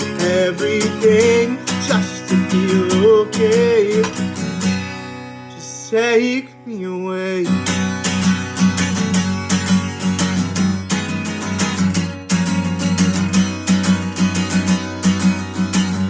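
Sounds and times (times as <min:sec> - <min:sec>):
strummed guitar: 0:00.0 - 0:16.0.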